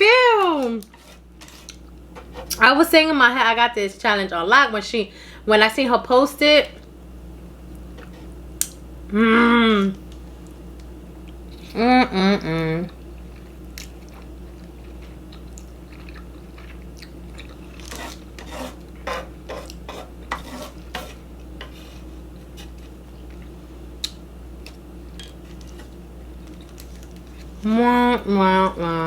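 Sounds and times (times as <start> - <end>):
steady low hum: 0.0 - 29.0
chewing: 13.2 - 18.2.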